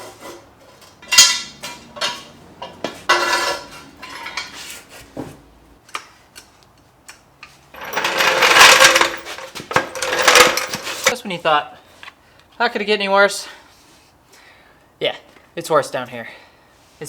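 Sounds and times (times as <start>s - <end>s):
metal clanks and scrapes: 0.0s - 4.9s, 7.4s - 11.2s
metallic rattle: 7.8s - 11.2s.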